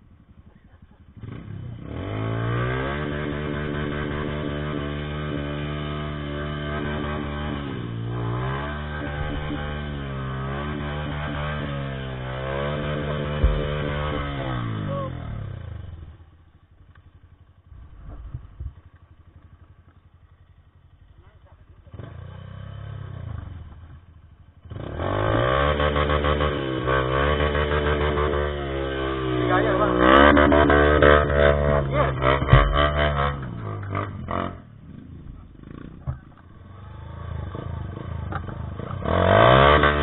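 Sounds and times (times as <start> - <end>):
motorcycle engine revving: 0.0 - 40.0.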